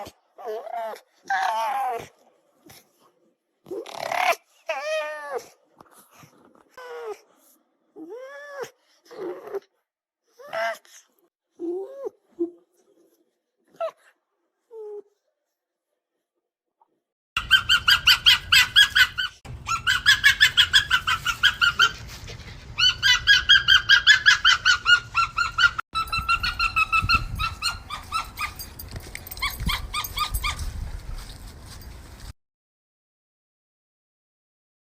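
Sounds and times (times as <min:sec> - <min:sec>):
fox yapping: 0:17.4 - 0:22.2, 0:22.8 - 0:28.7, 0:29.3 - 0:30.7.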